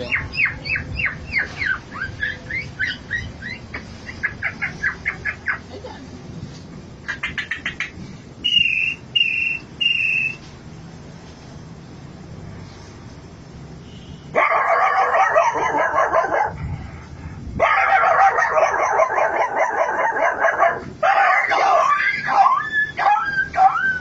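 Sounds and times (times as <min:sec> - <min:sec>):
short high whistles: 0:08.4 - 0:10.5.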